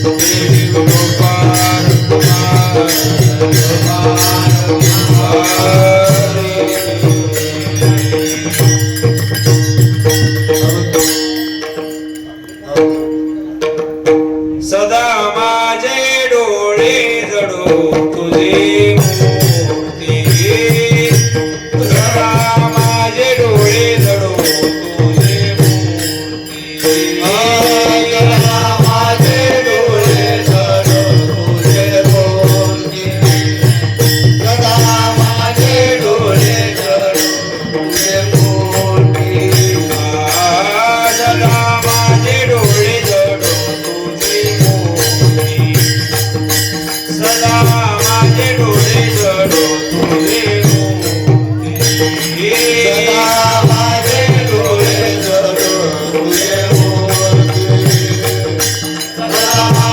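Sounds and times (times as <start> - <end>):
person singing devotional song: 0.0 - 11.5, 14.6 - 59.9
mridang drumming: 0.0 - 59.9.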